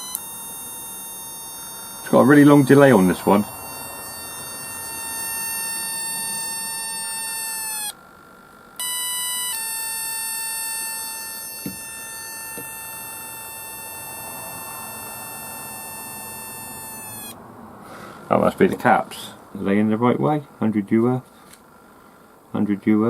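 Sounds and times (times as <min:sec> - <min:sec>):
electronic buzzer tone: 0:00.0 - 0:17.4.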